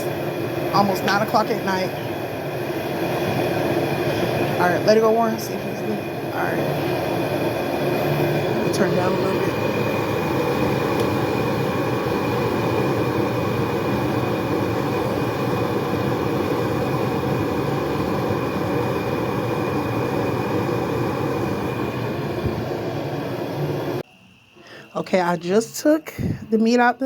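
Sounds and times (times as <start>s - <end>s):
gas burner flame rushing: 0.0s - 24.0s
meat frying in a pot: 6.3s - 24.0s.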